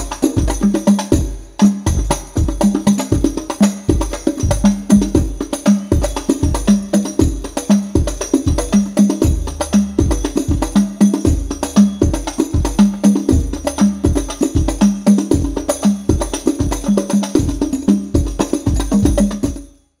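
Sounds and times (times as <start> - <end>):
frame drums: 0.0 - 19.8
tambourine jingles: 0.0 - 20.0
deep bass drum hits: 3.9 - 5.4, 9.2 - 15.6.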